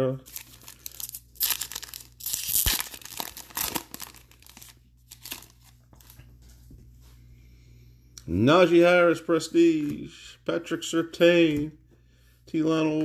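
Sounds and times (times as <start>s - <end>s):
wrapper tearing and crinkling: 0.2s - 5.7s.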